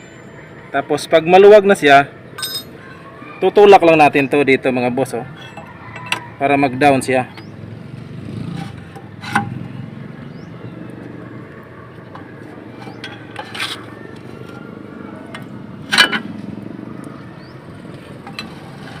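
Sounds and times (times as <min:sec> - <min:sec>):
tools knocking and clicking on metal: 0:05.4 - 0:06.3, 0:15.3 - 0:16.3.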